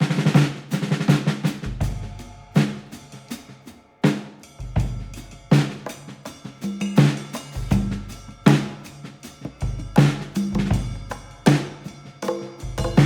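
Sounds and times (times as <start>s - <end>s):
drum-kit beat: 0.0s - 13.0s.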